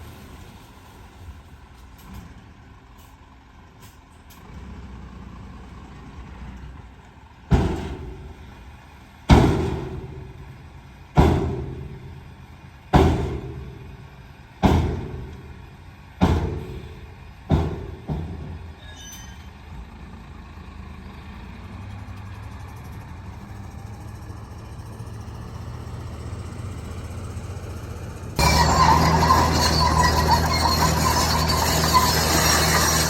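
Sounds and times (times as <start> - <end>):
loud ringing bangs: 9.3 - 10.4, 11.2 - 12.2, 13.0 - 18.6, 28.4 - 33.0
heavy machinery engine running: 22.5 - 33.0.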